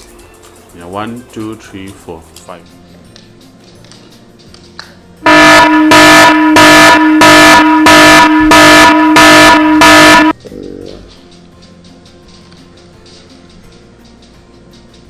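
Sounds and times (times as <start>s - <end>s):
air horn blasts: 5.2s - 10.4s.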